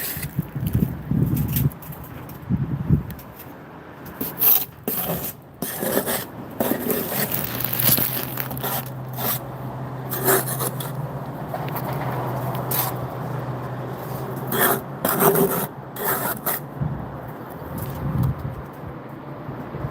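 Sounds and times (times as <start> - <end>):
steel trowel scraping mortar: 0.0 - 0.4, 4.1 - 9.5, 10.1 - 11.0, 12.4 - 13.1, 14.0 - 16.7.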